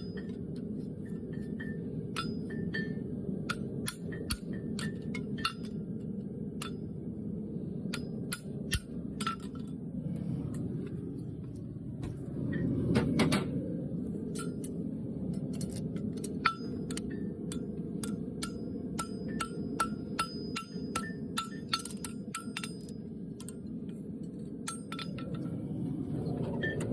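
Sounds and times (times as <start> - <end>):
steady low rumble: 0.0 - 26.9
hammer ringing on anvil: 17.5 - 22.9.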